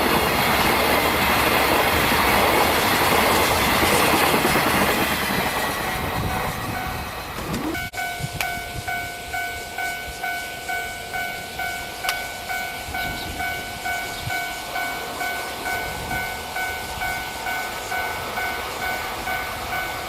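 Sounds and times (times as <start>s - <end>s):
low rumble of rail noise: 0.0s - 20.0s
level crossing alarm ringing: 5.8s - 20.0s.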